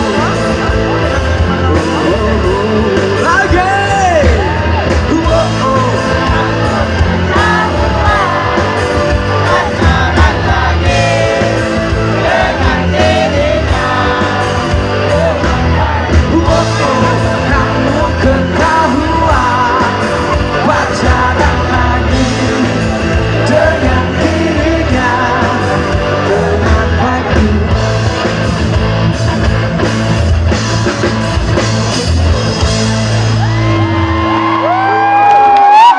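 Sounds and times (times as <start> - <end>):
person singing lead vocal: 0.0 - 28.6
live rock band playing: 0.0 - 35.9.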